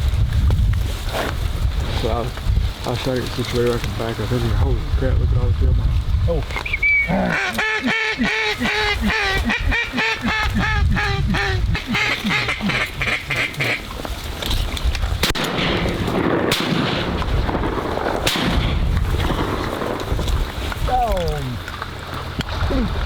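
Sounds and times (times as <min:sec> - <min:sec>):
duck quacking: 0:07.0 - 0:13.9
sharp cracks: 0:11.8 - 0:22.7.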